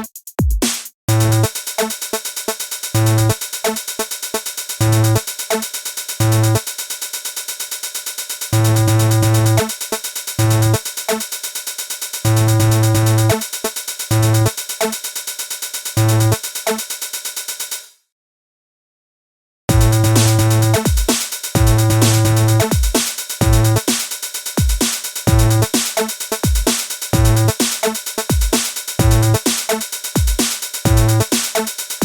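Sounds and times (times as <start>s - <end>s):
electronic music with heavy bass: 1.1s - 2.0s, 3.0s - 3.4s, 4.8s - 5.2s, 6.2s - 6.6s, 8.5s - 9.7s, 10.4s - 10.8s, 12.3s - 13.4s, 14.1s - 14.5s, 16.0s - 16.4s, 19.7s - 24.0s, 25.3s - 31.7s.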